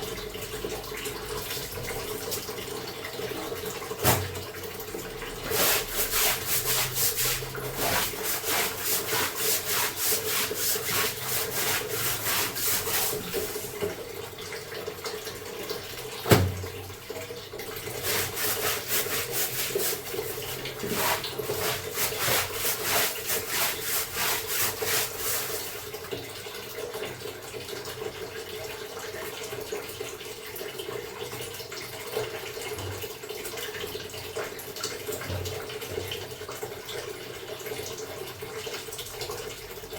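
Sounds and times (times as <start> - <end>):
water background: 0.0 - 28.3
hand scrubbing wet clothes: 5.4 - 14.0, 17.6 - 25.9.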